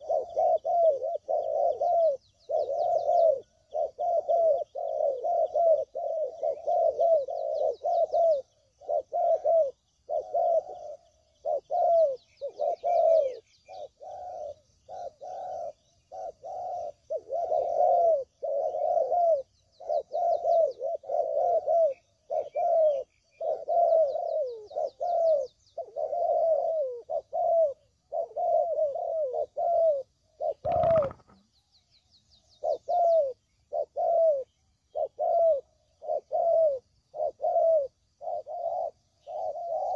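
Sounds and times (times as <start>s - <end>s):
doves cooing: 0.0s - 31.5s, 32.5s - 39.9s
small birds chirping: 0.0s - 39.9s
short thump: 30.6s - 31.4s.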